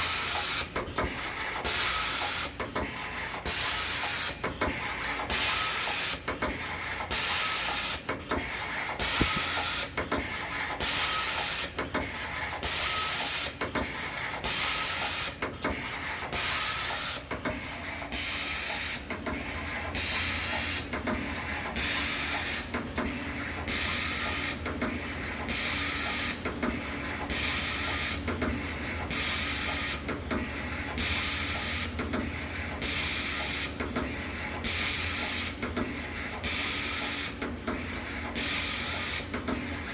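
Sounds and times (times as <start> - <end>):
machine hiss: 0.0 - 8.0, 8.8 - 11.7, 12.5 - 17.3, 18.1 - 21.0, 21.8 - 22.8, 23.4 - 24.6, 25.3 - 26.5, 27.2 - 28.2, 38.3 - 39.3.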